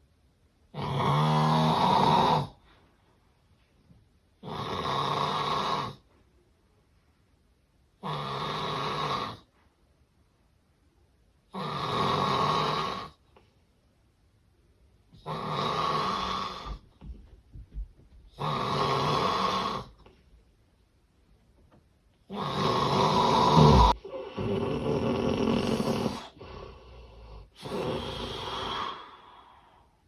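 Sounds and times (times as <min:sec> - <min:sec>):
person snoring: 0:00.8 - 0:02.6, 0:18.4 - 0:20.0, 0:22.3 - 0:29.9.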